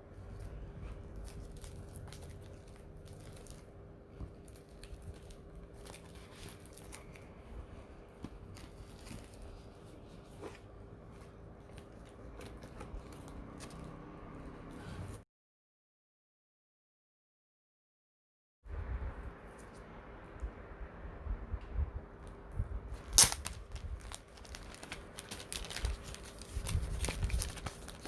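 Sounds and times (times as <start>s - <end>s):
clicks snips and crinkles: 0.3s - 7.4s, 23.0s - 28.0s
packaging being cut and torn: 23.0s - 28.0s.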